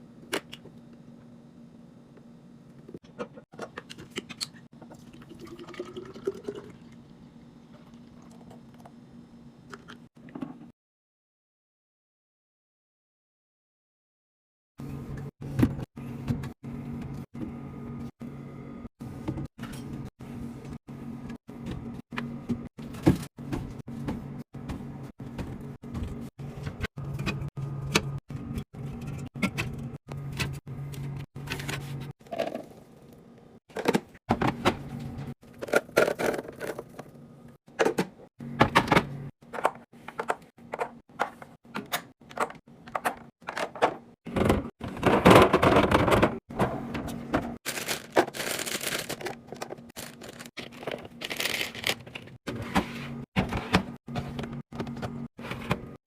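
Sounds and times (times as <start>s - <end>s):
plastic containers clattering: 35.5s - 37.1s, 47.4s - 52.3s.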